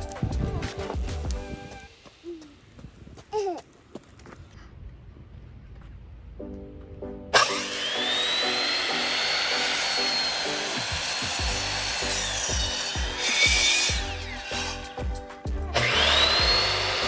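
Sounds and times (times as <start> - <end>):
background music with steady beat: 0.0 - 2.5, 6.4 - 17.0
power saw cutting wood: 7.4 - 15.1, 15.7 - 17.0.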